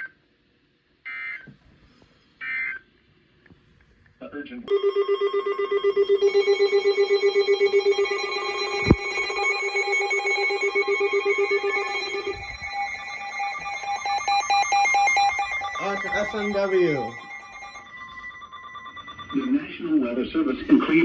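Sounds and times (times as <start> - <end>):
higher electronic tones: 4.7 - 21.0
pulsing electronic alert tone: 4.7 - 21.0.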